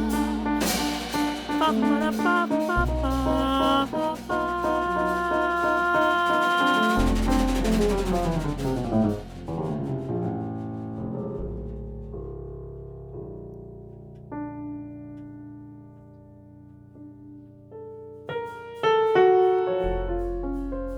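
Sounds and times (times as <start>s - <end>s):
double bass: 0.0s - 14.1s, 19.8s - 20.9s
jazz piano: 0.0s - 20.9s.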